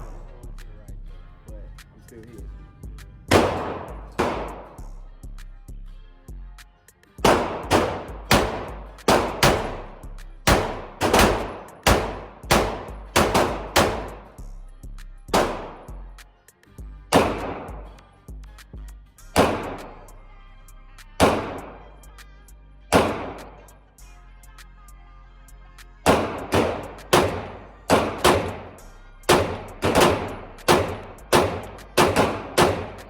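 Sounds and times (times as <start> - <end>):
pistol shots with ringing echo: 3.3 - 4.8, 7.2 - 14.3, 15.3 - 15.9, 17.1 - 18.0, 19.4 - 20.0, 21.2 - 21.9, 22.9 - 23.7, 26.1 - 33.0.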